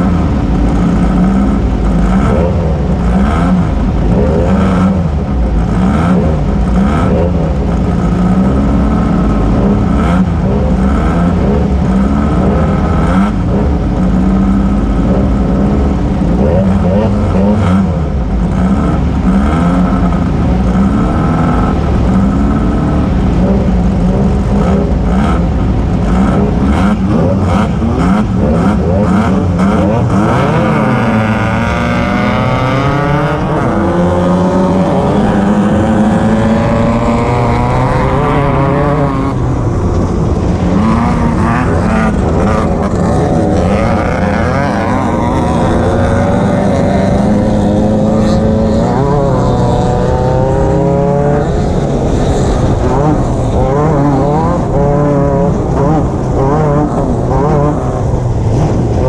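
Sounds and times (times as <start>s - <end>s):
race vehicle engine revving: 0.0s - 59.0s.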